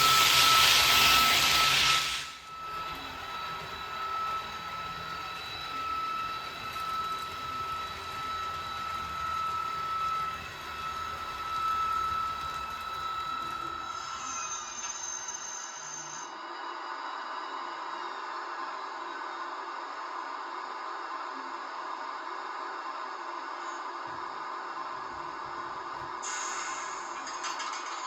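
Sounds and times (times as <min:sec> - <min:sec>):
model train whine: 0:00.0 - 0:20.3, 0:25.7 - 0:28.0
loud hiss: 0:26.2 - 0:27.3.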